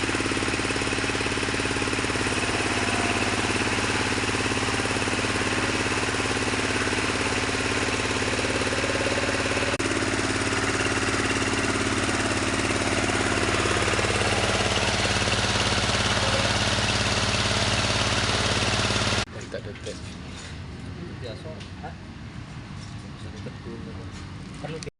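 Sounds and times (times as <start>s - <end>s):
wood crusher machine droning: 0.0s - 19.3s.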